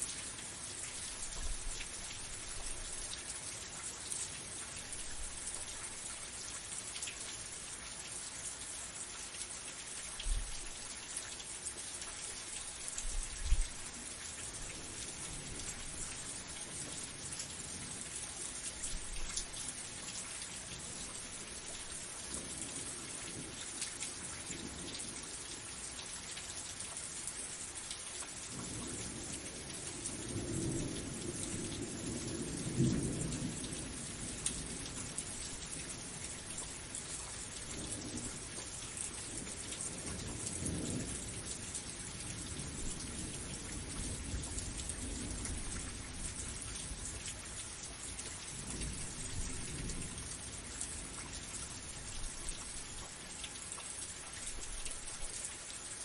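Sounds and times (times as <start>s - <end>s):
heavy rain hissing: 12.4s - 56.0s.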